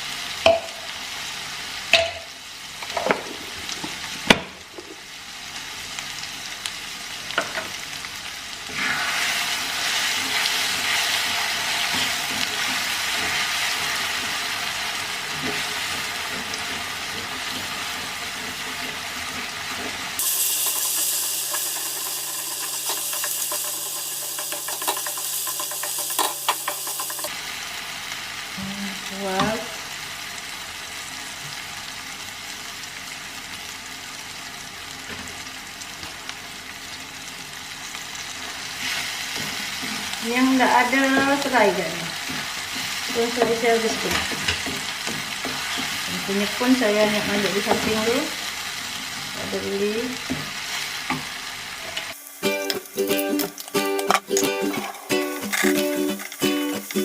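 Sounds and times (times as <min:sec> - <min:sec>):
paste sizzling in oil: 0:05.6 - 0:28.6, 0:37.0 - 0:57.0.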